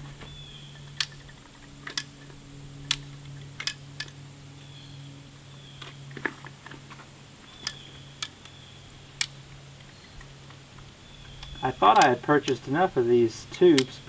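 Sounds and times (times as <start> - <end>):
low hum: 0.0 - 14.0
sharp clicks: 0.7 - 4.2, 7.4 - 14.0.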